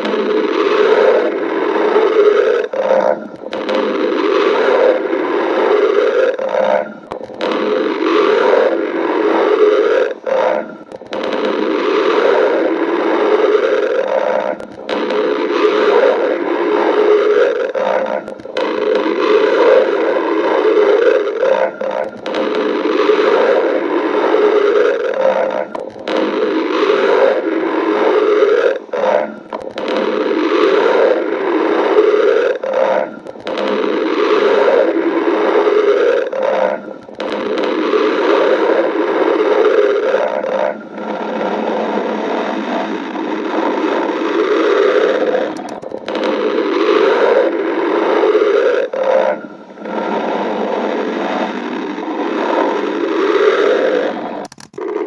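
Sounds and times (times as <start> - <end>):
stomach growling: 0.0 - 55.0.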